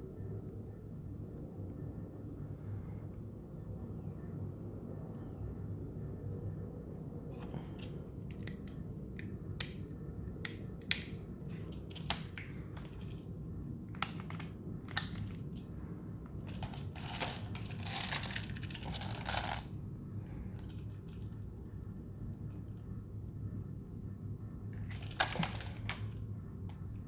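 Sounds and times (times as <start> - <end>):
rattling and rustling: 16.3 - 19.7.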